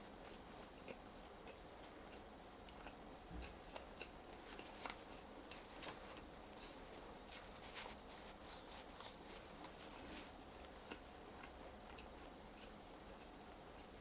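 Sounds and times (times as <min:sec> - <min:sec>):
quiet room hiss: 0:00.0 - 0:14.0
person chewing fries: 0:00.6 - 0:07.5, 0:10.5 - 0:14.0.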